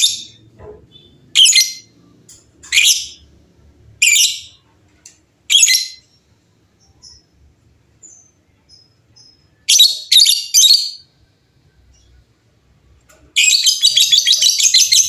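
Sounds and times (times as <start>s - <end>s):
faint bird chirps: 0.0s - 2.0s, 5.5s - 12.4s, 13.4s - 15.0s
lovebirds calling: 0.0s - 2.0s, 2.6s - 3.4s, 4.0s - 4.6s, 5.5s - 11.2s, 13.4s - 15.0s.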